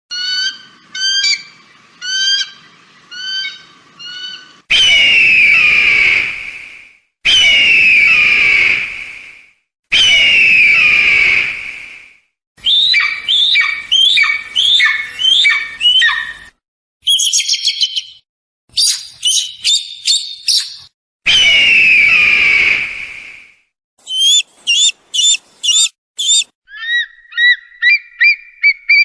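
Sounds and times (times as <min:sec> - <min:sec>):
eagle screaming: 0:00.1 - 0:06.2, 0:09.9 - 0:11.4, 0:12.6 - 0:16.4, 0:24.0 - 0:29.0
eagle high-pitched chattering: 0:24.0 - 0:26.5
eagle short calls: 0:24.0 - 0:27.5.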